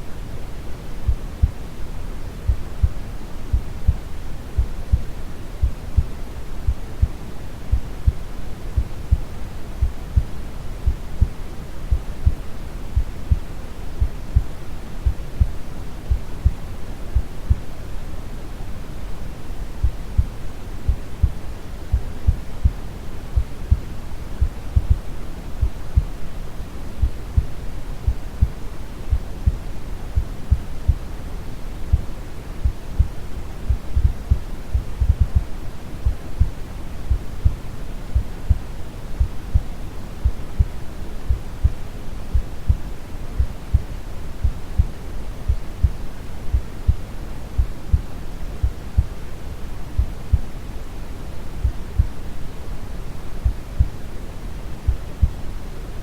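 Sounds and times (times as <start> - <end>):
heartbeat thumps: 1.1 - 1.6, 2.5 - 16.6, 17.2 - 17.7, 19.8 - 22.8, 23.4 - 26.2, 27.0 - 31.1, 31.9 - 49.2, 50.0 - 50.6, 51.6 - 52.2, 53.4 - 54.0, 54.9 - 55.4.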